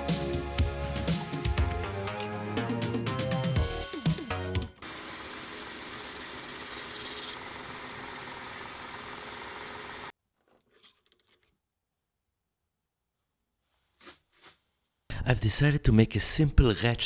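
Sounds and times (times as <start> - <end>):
metal lathe machining: 4.8 - 10.1.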